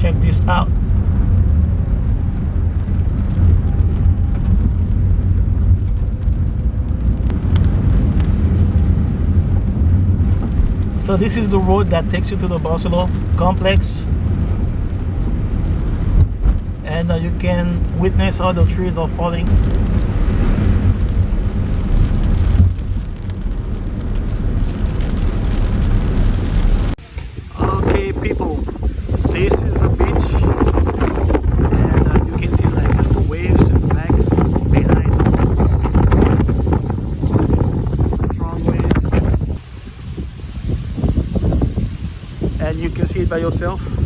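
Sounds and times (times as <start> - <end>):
car engine and road rumble: 0.0 - 44.0
rain: 0.0 - 44.0.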